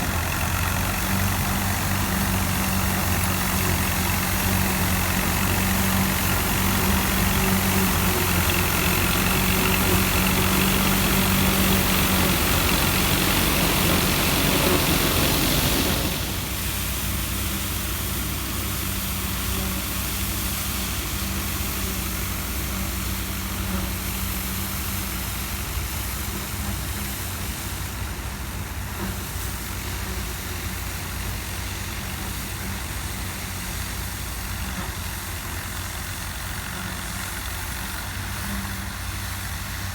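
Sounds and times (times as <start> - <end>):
combine harvester engine hum: 0.0 - 39.9.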